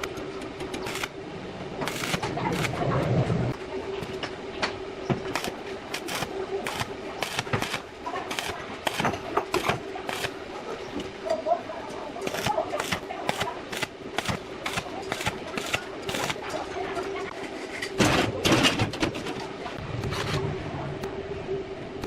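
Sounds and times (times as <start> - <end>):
electric hand drill running: 5.3 - 9.0.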